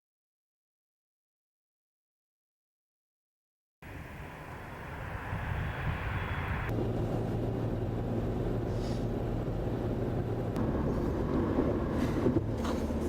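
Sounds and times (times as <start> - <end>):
vehicle engine humming: 3.8 - 13.0.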